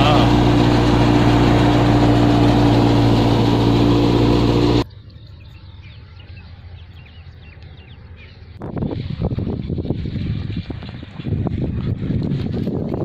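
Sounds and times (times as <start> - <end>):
farm machinery engine running: 0.0 - 4.9
small birds chirping: 4.8 - 8.6.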